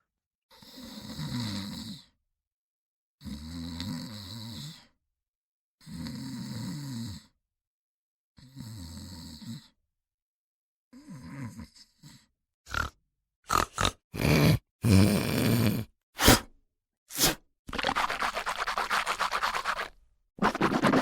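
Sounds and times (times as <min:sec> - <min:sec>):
loud noisy snorts: 0:12.7 - 0:16.5, 0:17.1 - 0:17.4
person snoring: 0:12.7 - 0:16.5, 0:17.1 - 0:17.4.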